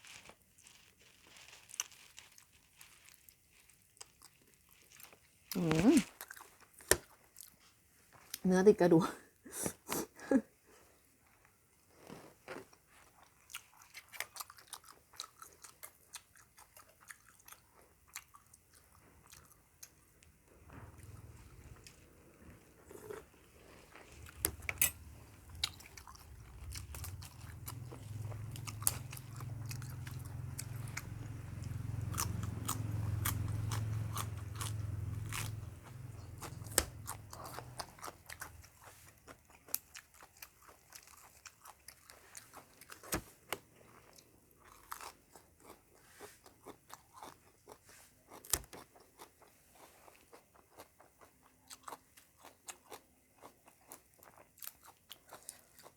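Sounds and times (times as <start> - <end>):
chewing crunchy food: 0.0 - 8.4, 10.7 - 55.9.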